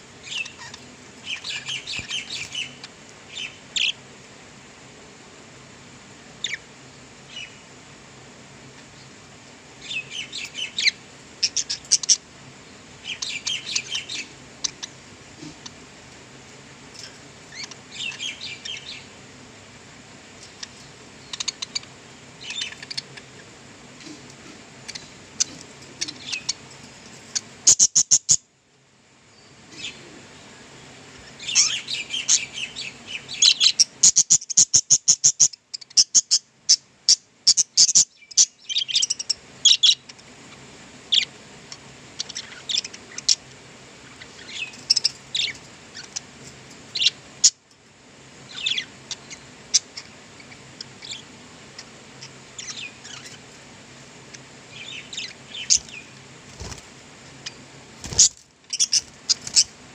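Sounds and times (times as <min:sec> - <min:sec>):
budgerigars chirping: 0:00.2 - 0:04.0, 0:09.8 - 0:12.2, 0:13.0 - 0:15.8, 0:17.5 - 0:19.1, 0:20.6 - 0:23.5, 0:24.8 - 0:26.6, 0:27.4 - 0:28.4, 0:31.4 - 0:36.4, 0:41.1 - 0:43.4, 0:48.5 - 0:53.5, 0:54.7 - 0:56.8, 0:57.4 - 0:59.7.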